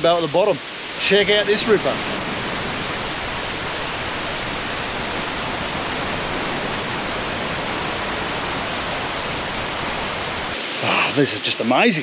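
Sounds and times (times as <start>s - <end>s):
waterfall rushing: 0.3s - 11.6s.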